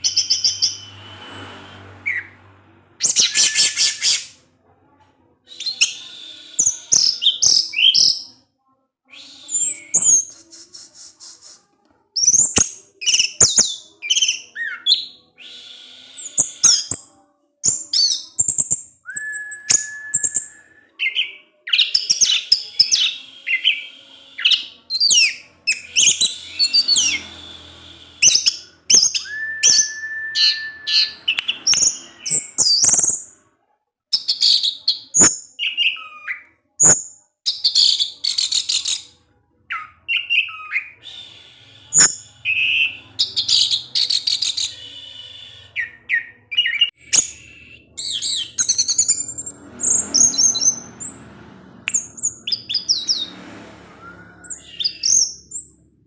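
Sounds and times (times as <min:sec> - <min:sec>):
long steady bird whistle: 0:03.0 - 0:04.3, 0:05.5 - 0:08.1, 0:09.1 - 0:11.4, 0:13.0 - 0:17.0, 0:18.3 - 0:33.1, 0:40.1 - 0:51.2, 0:51.9 - 0:55.7
thrush singing: 0:09.1 - 0:32.8.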